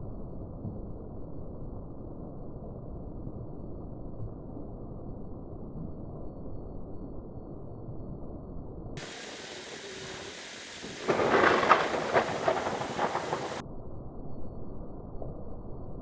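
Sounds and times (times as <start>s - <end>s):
dull steady low noise: 0.0s - 16.0s
close thunderclap rumbling: 9.0s - 13.6s
rain hissing: 9.0s - 13.6s.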